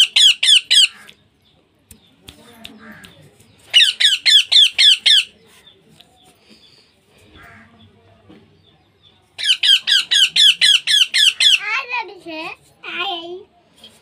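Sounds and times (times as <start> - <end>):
baby parrot squawking: 0.0 - 1.1, 3.7 - 5.3, 9.4 - 11.9.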